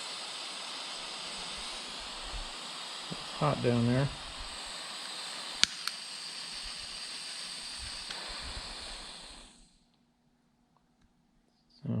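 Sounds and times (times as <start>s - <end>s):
hiss of burning gas: 0.0s - 9.9s
sharp clicks: 5.0s - 6.0s.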